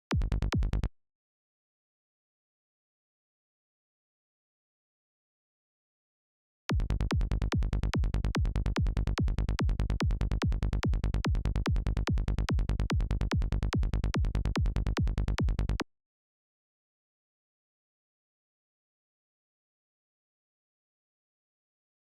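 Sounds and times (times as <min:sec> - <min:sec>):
kick drum and synth bass loop: 0:00.2 - 0:00.8, 0:06.7 - 0:15.8.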